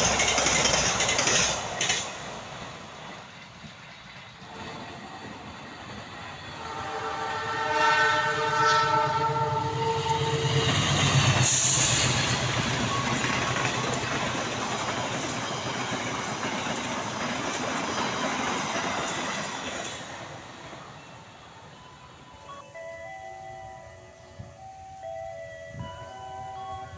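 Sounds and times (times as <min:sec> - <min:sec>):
train wheels rumbling on rails: 0:00.0 - 0:22.6
train rushing past: 0:00.0 - 0:26.9
locomotive horn chord: 0:06.6 - 0:10.9.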